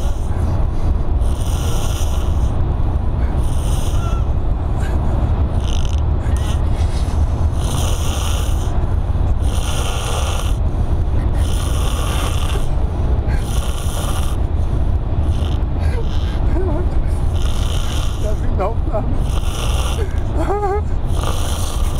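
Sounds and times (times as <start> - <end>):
man snoring heavily: 0.0 - 0.4, 1.2 - 2.6, 3.3 - 4.4, 5.5 - 8.8, 9.4 - 10.6, 11.3 - 12.8, 13.4 - 14.5, 15.2 - 18.5, 19.2 - 21.9
steady low rumble: 0.0 - 21.9.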